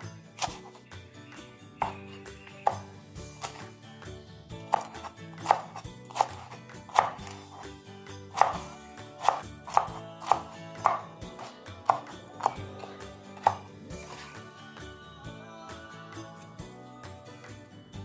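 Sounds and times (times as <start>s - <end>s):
background music: 0.0s - 18.0s
knife chopping on cutting board: 0.4s - 0.8s, 1.8s - 3.7s, 4.6s - 14.4s.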